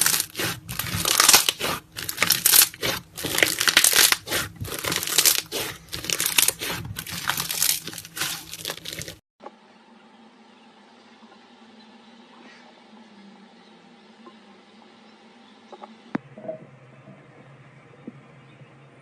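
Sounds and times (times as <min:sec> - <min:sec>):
slime squelching and crackling: 0:00.0 - 0:09.2.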